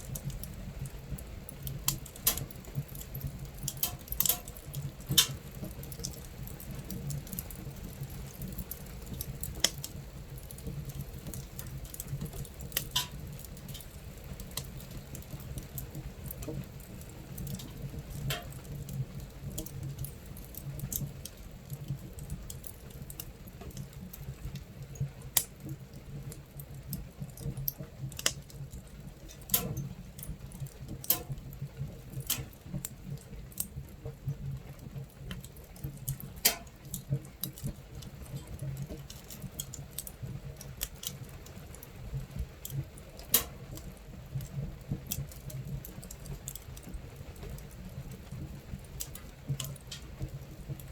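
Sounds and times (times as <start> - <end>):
fire crackling and popping: 0.0 - 50.9
low rumble of stove: 0.0 - 50.9
rain pattering on tent: 0.0 - 50.9.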